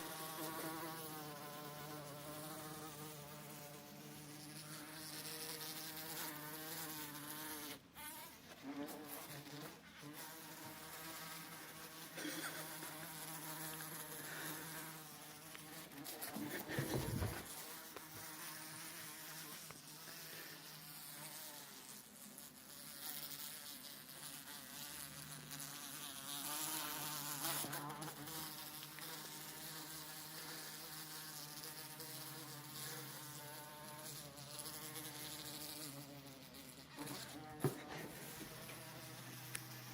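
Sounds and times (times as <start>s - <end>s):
bee buzzing: 0.0s - 39.9s
low thump: 16.7s - 17.5s.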